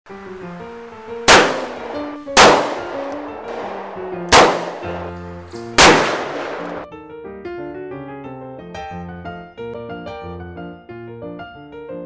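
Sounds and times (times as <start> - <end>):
ragtime piano music: 0.1 - 12.0
gunshot-like bangs: 1.3 - 6.8.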